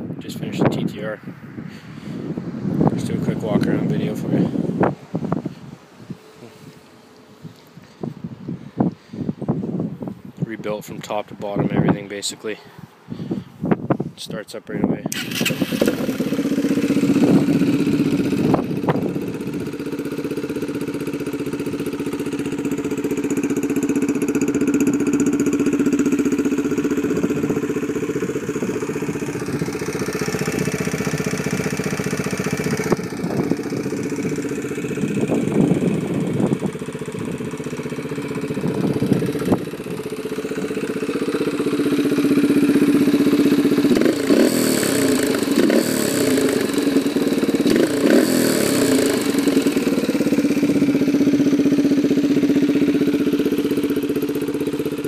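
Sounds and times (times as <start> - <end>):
motorcycle engine idling: 15.1 - 55.0.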